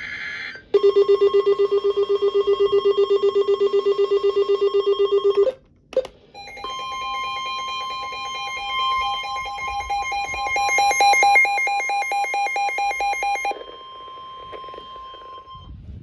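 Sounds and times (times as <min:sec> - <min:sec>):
low pulsing beep: 0:06.4 - 0:15.9.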